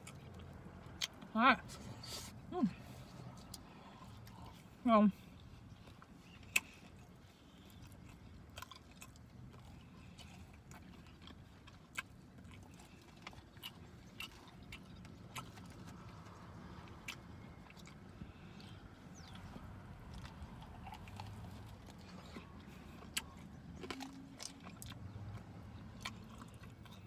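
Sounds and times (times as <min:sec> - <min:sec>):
person chewing and biting: 0:05.4 - 0:27.0.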